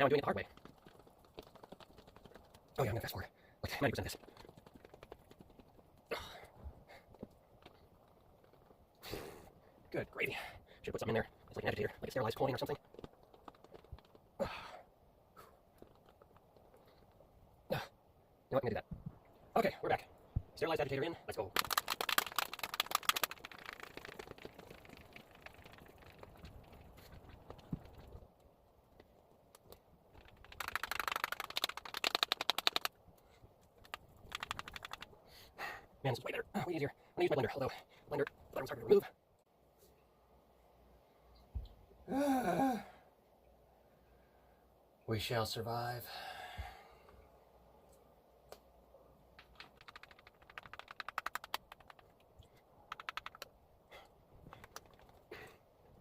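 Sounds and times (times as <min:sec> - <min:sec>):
agitator rattling in container: 0:00.0 - 0:02.8, 0:21.5 - 0:28.2, 0:30.1 - 0:32.9, 0:33.8 - 0:35.1, 0:49.4 - 0:52.2.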